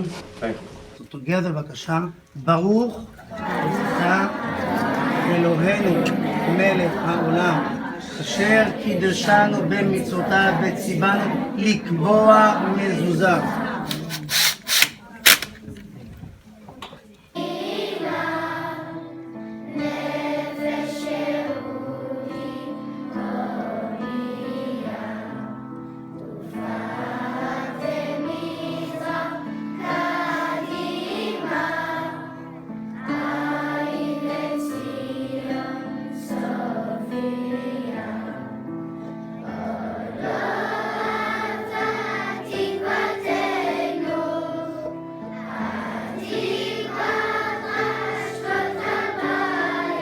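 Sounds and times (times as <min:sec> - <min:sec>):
choir singing: 0:03.2 - 0:15.4, 0:17.3 - 0:50.0
musical accompaniment: 0:03.4 - 0:15.6, 0:36.4 - 0:50.0.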